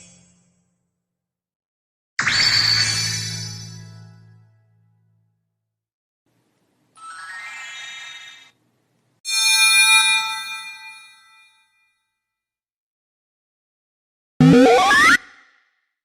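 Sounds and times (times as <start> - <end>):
rising sparkling chime tones: 7.0 - 8.4
bell-like chime ringing: 9.3 - 11.8.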